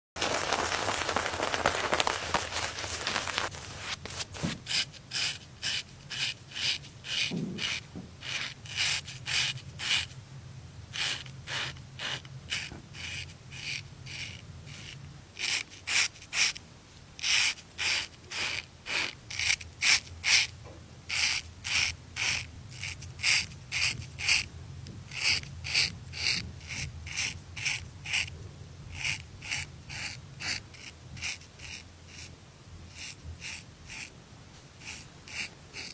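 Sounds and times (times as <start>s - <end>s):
razor scraping stubble: 0.2s - 10.1s, 34.8s - 35.9s.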